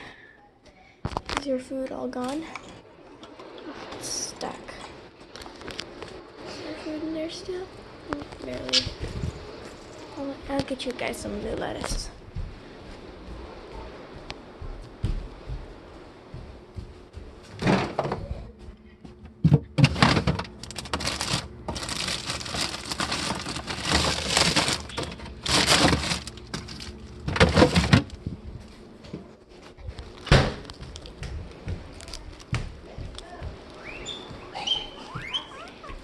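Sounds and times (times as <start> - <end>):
lettuce leaves crackling: 20.5 - 27.3.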